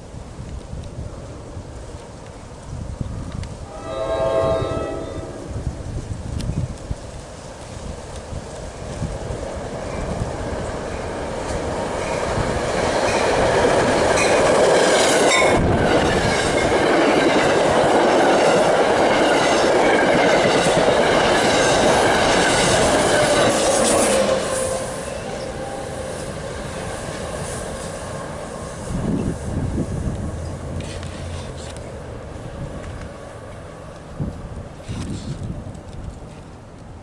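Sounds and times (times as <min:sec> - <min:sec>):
train passing: 0:03.4 - 0:37.0
train wheels squealing: 0:21.5 - 0:26.4.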